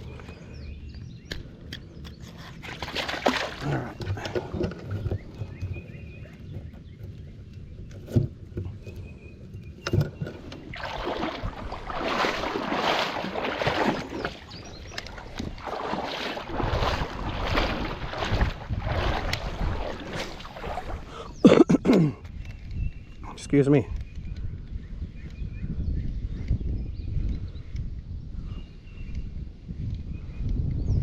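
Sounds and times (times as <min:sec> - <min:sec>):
paddle swishing and splashing: 0:02.3 - 0:05.6, 0:10.2 - 0:21.4.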